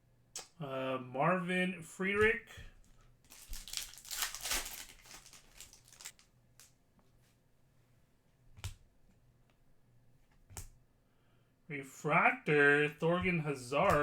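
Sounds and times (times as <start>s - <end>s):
card wrapper crinkling: 2.9s - 6.7s.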